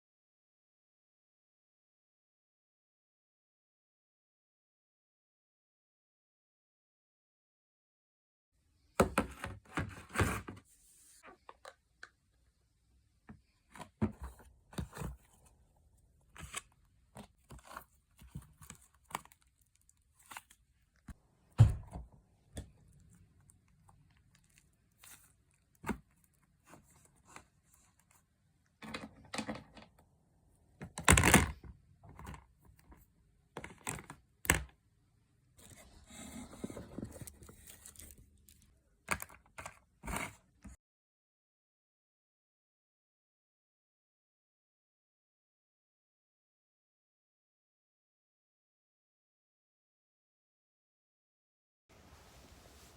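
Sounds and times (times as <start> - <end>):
packaging rustling and crinkling: 36.0 - 38.7.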